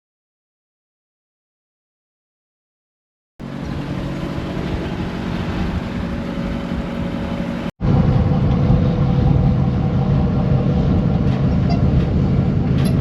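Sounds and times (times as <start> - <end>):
large engine running: 3.4 - 13.0.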